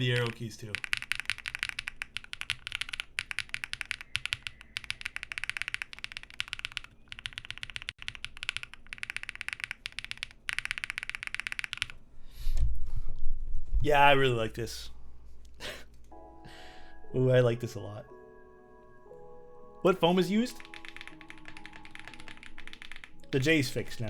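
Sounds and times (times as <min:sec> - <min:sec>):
mechanical keyboard typing: 0:00.0 - 0:12.0, 0:20.4 - 0:24.0.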